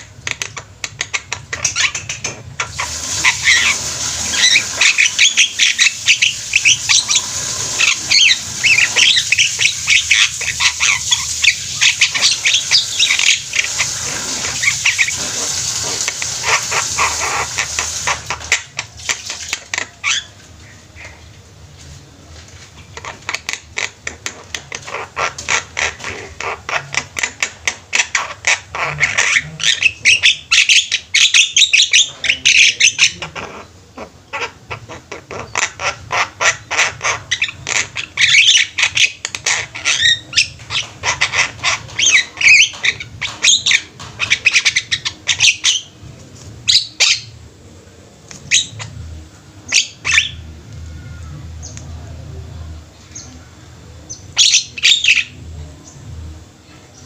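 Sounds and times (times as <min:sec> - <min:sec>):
mynas calling loudly: 0:02.6 - 0:20.4, 0:54.1 - 0:55.4.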